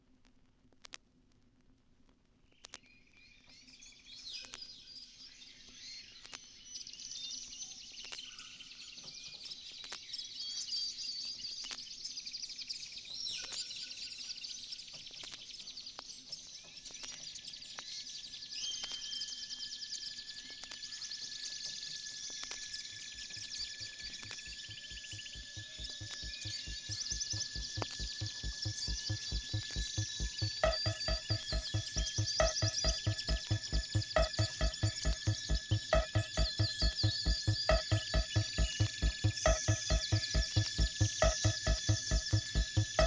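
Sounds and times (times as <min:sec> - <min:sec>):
steady high tones: 0:23.6 - 0:43.0.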